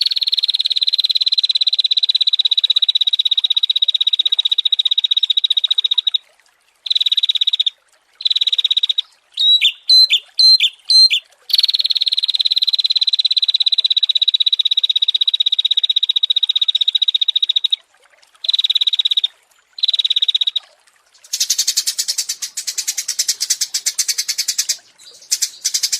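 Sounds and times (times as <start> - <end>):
songbird buzzy trills: 6.8 - 17.8, 18.4 - 25.9
loud sharp bird notes: 9.4 - 11.2.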